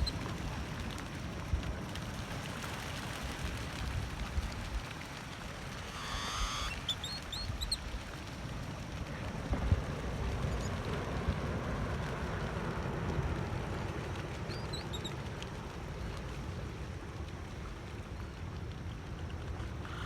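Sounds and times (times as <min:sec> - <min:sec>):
rushing water: 0:00.0 - 0:20.0
wind: 0:00.0 - 0:20.0
high bird calls: 0:05.8 - 0:07.8.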